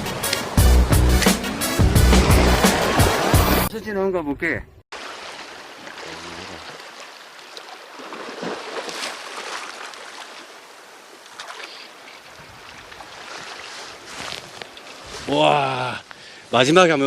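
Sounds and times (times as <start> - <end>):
sea surf against rocks: 0.0 - 3.7.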